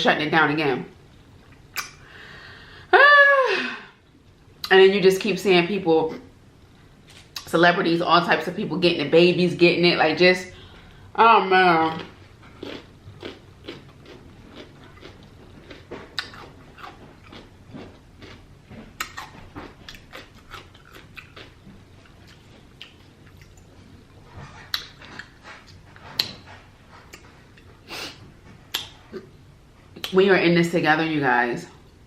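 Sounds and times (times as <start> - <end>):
lip smacks: 1.5 - 2.0, 19.0 - 21.5, 24.7 - 26.4, 28.7 - 29.3
wet mouth clicks: 1.8 - 2.0, 28.7 - 29.3
person chewing: 11.9 - 27.7.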